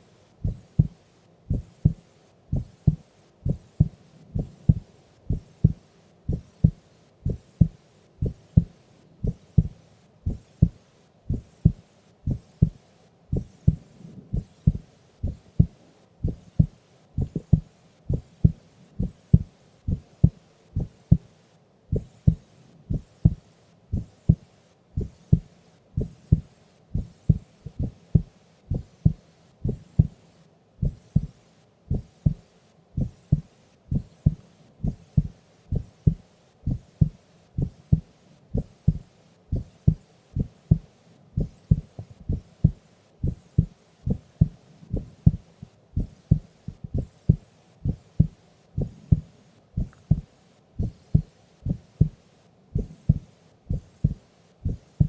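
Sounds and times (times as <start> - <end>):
heartbeat double thump: 1.5 - 20.0, 33.0 - 38.0, 38.6 - 45.4, 46.0 - 52.2, 52.8 - 54.8.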